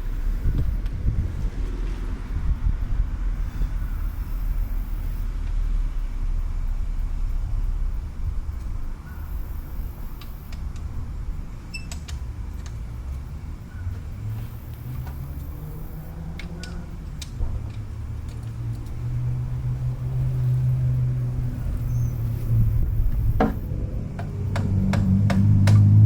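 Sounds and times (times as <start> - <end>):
low engine rumble: 0.0 - 26.0
light clicks: 4.8 - 24.8.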